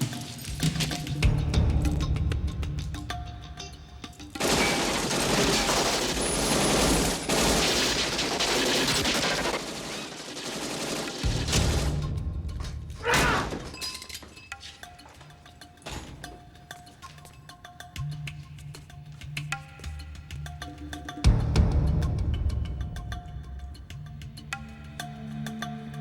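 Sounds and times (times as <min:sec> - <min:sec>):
automatic gunfire: 0:04.4 - 0:12.0.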